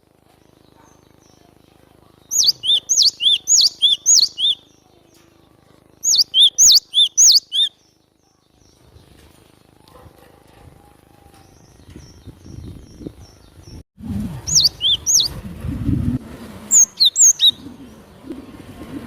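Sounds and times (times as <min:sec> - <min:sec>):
tit singing falling notes: 0:02.3 - 0:04.6, 0:06.0 - 0:07.7, 0:14.5 - 0:15.3.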